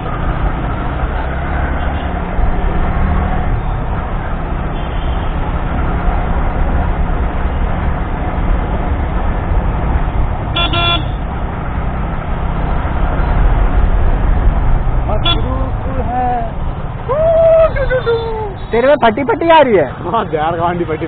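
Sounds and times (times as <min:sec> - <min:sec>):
vehicle horn beep: 0:04.7 - 0:05.3, 0:10.5 - 0:11.2, 0:15.2 - 0:15.5.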